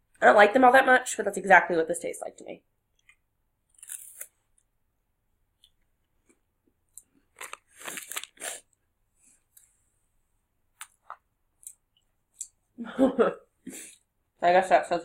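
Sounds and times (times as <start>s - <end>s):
crunching and chewing wafer: 3.7s - 4.6s, 7.3s - 8.7s.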